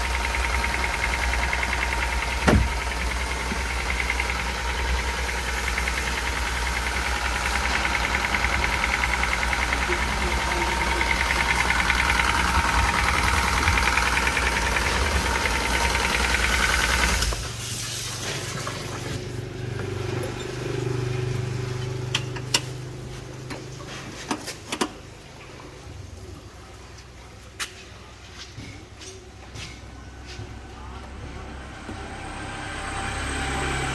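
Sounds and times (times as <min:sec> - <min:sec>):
motor running: 0:00.0 - 0:17.6.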